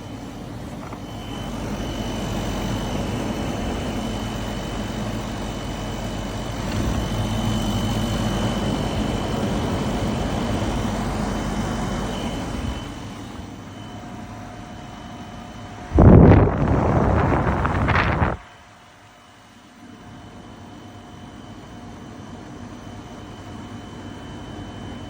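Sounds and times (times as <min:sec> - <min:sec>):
air conditioner fan hum: 0:00.0 - 0:25.0
loud rush of noise: 0:15.8 - 0:18.9.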